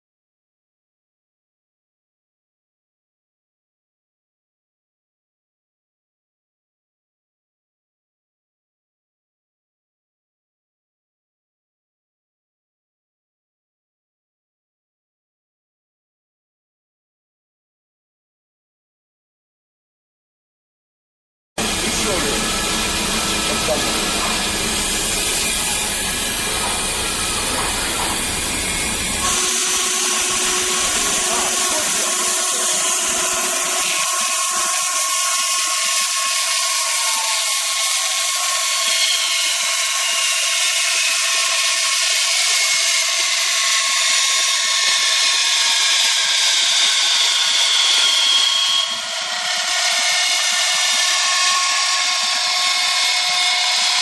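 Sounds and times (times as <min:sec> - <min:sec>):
band saw whining: 0:21.6 - 0:54.0.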